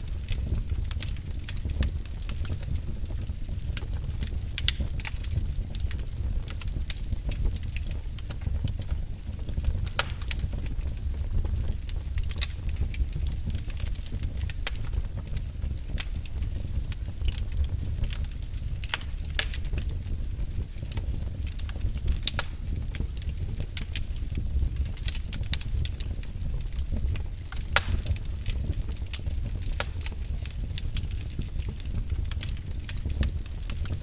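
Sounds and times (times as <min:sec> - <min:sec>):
wood fire crackling: 0:00.0 - 0:34.0.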